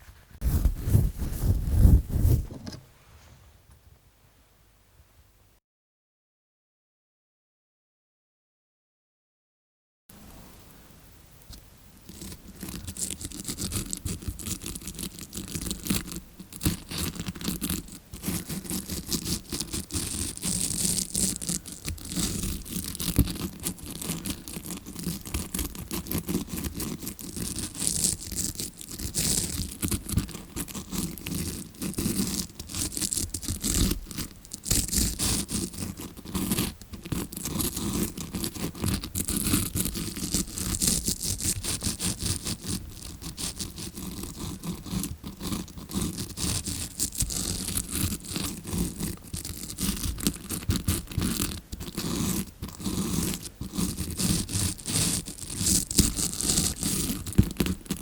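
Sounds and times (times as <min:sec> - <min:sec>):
brush bristles scratching microphone: 0:00.0 - 0:02.8, 0:12.1 - 0:58.0.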